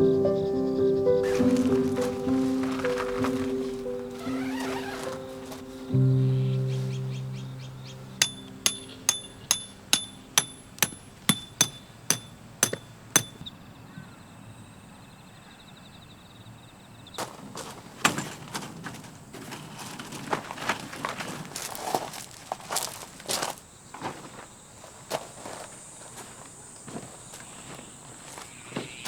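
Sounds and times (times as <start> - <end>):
music track: 0.0 - 10.8
crunching footsteps: 1.2 - 13.3, 17.2 - 29.0
hammer striking metal tent peg: 8.2 - 13.5.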